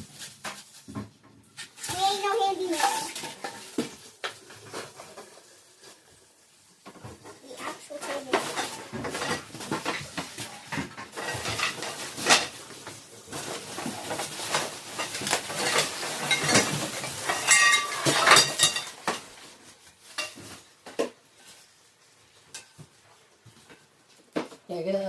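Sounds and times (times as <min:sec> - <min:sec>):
desk parts clattering and scraping: 0:06.9 - 0:19.4.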